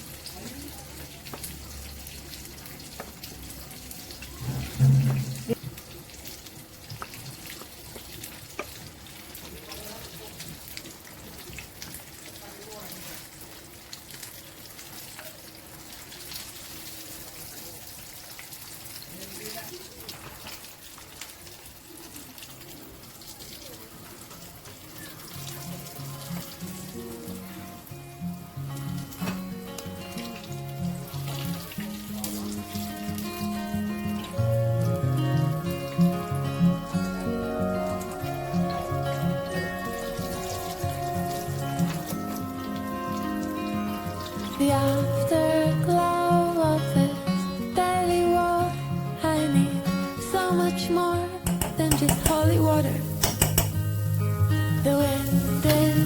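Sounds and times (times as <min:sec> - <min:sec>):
tap water running into sink: 0:00.0 - 0:21.7, 0:28.6 - 0:45.1, 0:51.4 - 0:54.3
background music: 0:25.9 - 0:56.0.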